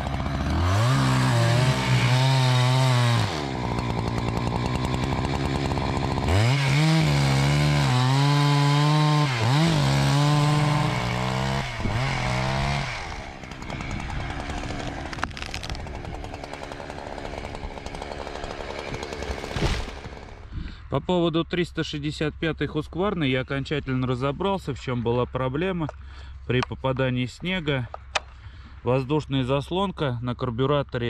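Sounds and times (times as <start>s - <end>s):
chainsaw revving: 0.0s - 20.5s.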